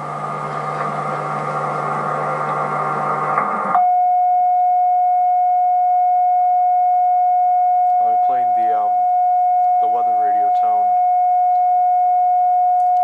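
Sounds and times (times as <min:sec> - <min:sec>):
droning static noise and tones: 0:00.0 - 0:13.0
emergency alert tone: 0:03.7 - 0:13.0.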